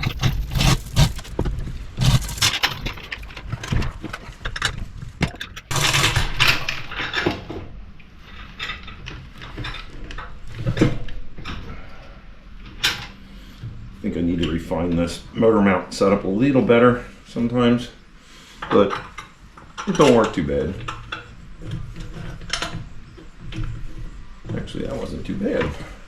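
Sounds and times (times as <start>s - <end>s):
metal clanks and scraping: 0.0s - 12.1s, 18.6s - 26.0s.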